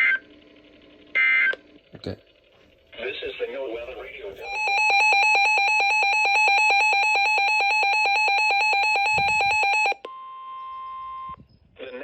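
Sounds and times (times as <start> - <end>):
steady alarm tone: 4.4 - 10.0.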